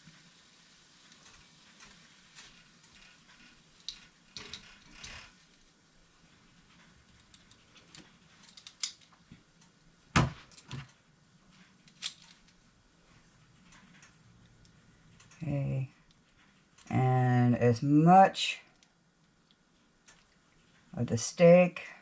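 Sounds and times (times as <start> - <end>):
utensils and containers clicking: 3.8 - 5.3, 7.0 - 9.2, 11.8 - 12.6.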